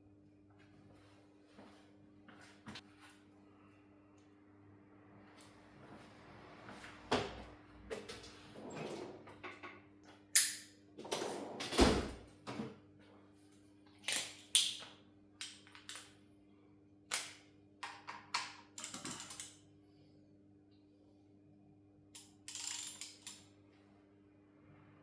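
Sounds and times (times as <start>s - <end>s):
faint steady hum: 0.0s - 11.0s
metal tools clicking and knocking: 17.8s - 19.6s, 22.2s - 23.5s.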